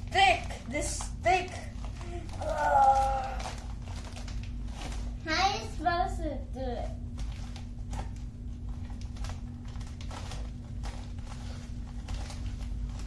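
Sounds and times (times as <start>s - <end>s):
steady low hum: 0.0s - 13.0s
packaging clicks and scrapes: 7.2s - 13.0s.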